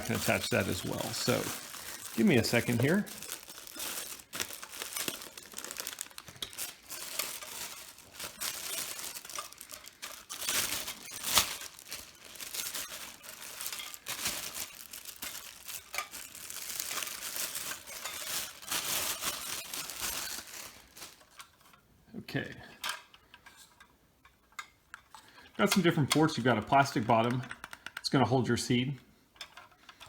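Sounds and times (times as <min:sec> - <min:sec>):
packaging crinkling and rustling: 0:00.0 - 0:21.8.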